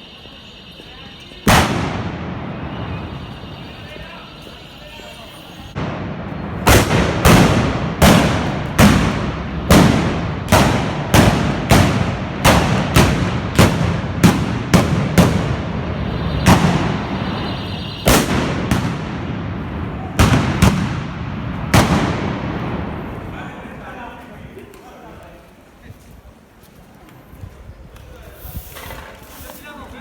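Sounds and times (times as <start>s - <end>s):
blunderbuss blasts with echo: 1.4s - 4.4s, 5.7s - 23.9s.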